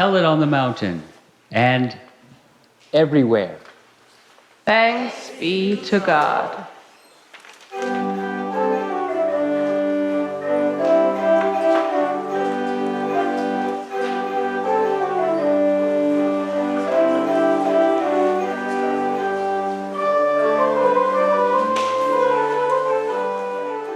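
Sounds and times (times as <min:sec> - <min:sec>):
church organ chords: 0:07.7 - 0:23.9.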